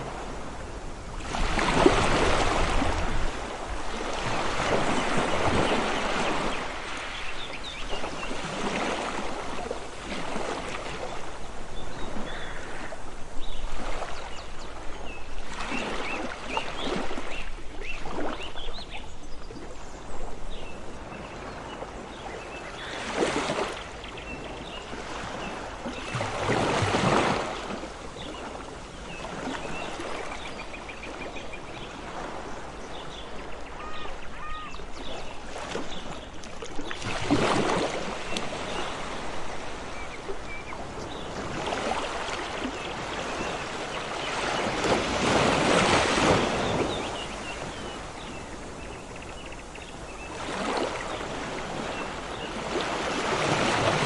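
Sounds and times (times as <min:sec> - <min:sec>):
ocean waves washing: 0:00.0 - 0:18.5, 0:20.8 - 0:54.0
short high bird calls: 0:33.7 - 0:34.9.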